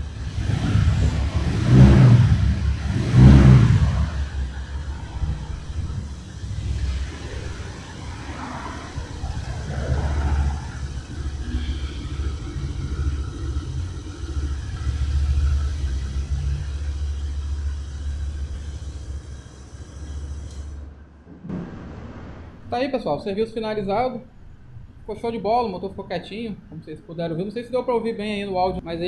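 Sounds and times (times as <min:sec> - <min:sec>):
scooter engine running: 0:00.0 - 0:21.4.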